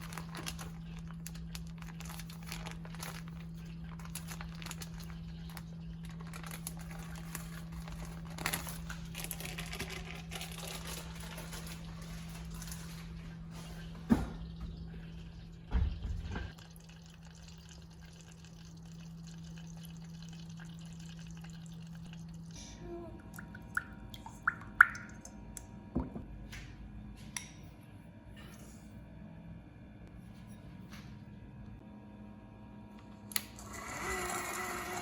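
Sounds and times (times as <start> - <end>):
water drips: 14.4 - 25.7.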